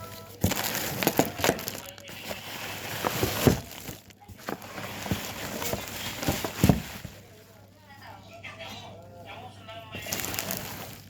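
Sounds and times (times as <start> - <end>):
rustling packaging: 0.0 - 7.6, 9.9 - 11.0.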